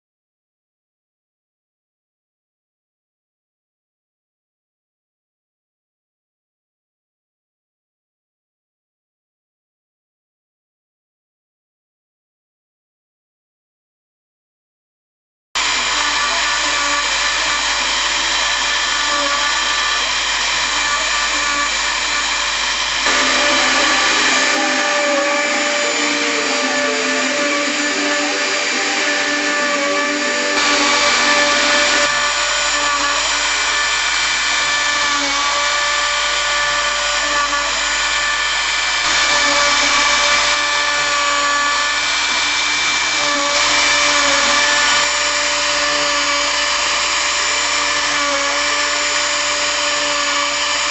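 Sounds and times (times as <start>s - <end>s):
milling machine spindle whine: 15.6s - 50.9s.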